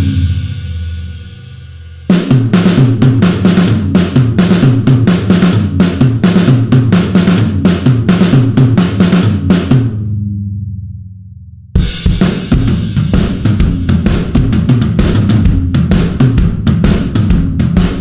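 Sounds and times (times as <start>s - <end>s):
fast drum pattern: 2.1s - 10.0s, 11.8s - 18.0s.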